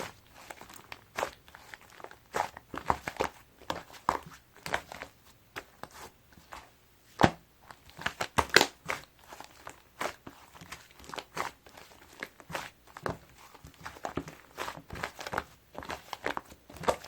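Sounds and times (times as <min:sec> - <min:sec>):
clay slime squeezed with wet pops: 0:07.1 - 0:17.0.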